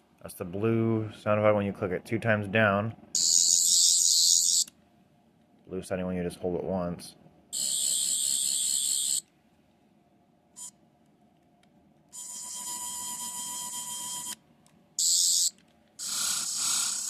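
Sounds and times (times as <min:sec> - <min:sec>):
toy electronic sound effects: 0:03.2 - 0:04.7, 0:07.6 - 0:09.2, 0:12.1 - 0:14.4, 0:15.0 - 0:17.0.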